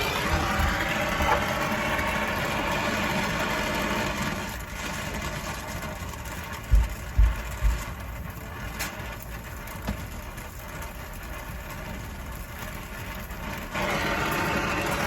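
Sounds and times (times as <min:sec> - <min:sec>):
motor humming: 0:00.0 - 0:04.6, 0:13.7 - 0:15.0.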